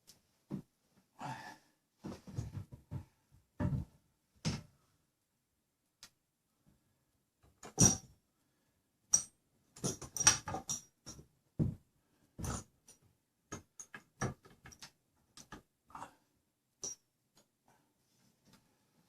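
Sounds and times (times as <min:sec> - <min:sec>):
tools and metal hardware clinking: 0:09.1 - 0:11.2.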